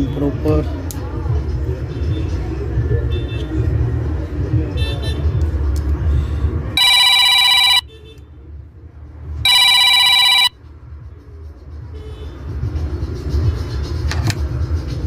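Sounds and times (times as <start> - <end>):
electronic telephone ringing: 6.8 - 7.9, 9.5 - 10.6.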